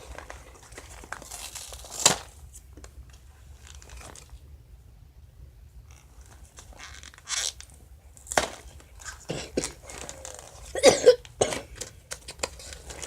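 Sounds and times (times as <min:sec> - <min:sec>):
paper packaging tearing and crunching: 0:00.0 - 0:02.6, 0:03.5 - 0:04.4, 0:06.0 - 0:10.8, 0:11.5 - 0:13.0.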